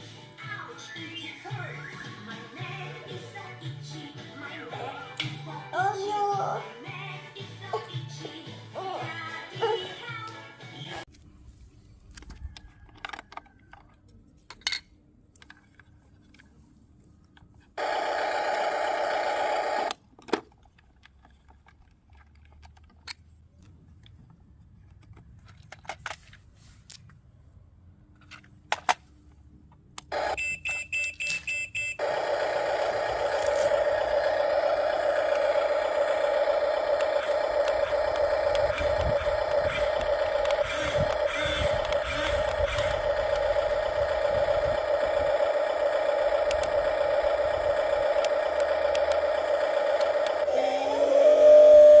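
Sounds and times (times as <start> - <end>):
toy motors whirring: 17.8 - 23.2, 31.9 - 52.0
quick beeps: 30.3 - 32.0.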